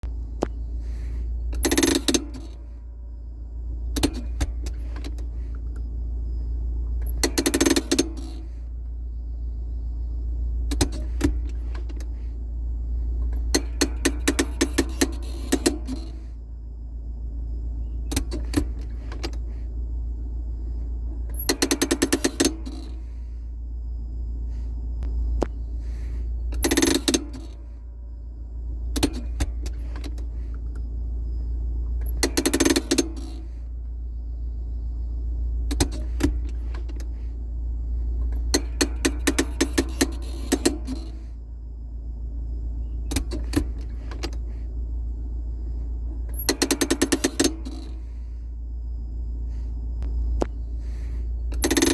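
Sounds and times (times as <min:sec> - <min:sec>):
steady low hum: 0:00.0 - 0:51.9
handbrake lever ratcheting: 0:01.5 - 0:02.6, 0:03.9 - 0:05.3, 0:07.0 - 0:08.5, 0:10.7 - 0:12.1, 0:13.2 - 0:16.2, 0:18.1 - 0:19.4, 0:21.3 - 0:23.0, 0:26.5 - 0:27.6, 0:28.9 - 0:30.6, 0:32.0 - 0:33.5, 0:35.7 - 0:37.1, 0:38.2 - 0:41.2, 0:43.1 - 0:44.4, 0:46.3 - 0:48.0, 0:51.5 - 0:51.9.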